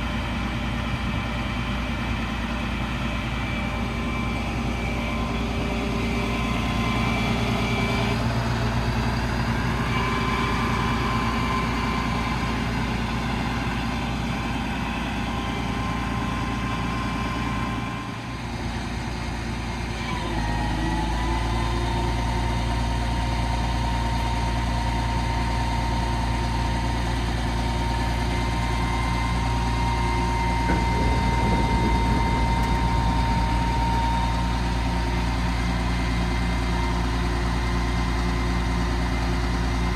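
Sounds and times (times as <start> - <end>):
diesel truck engine running: 0.0 - 39.9
faint steady whine: 28.6 - 36.3.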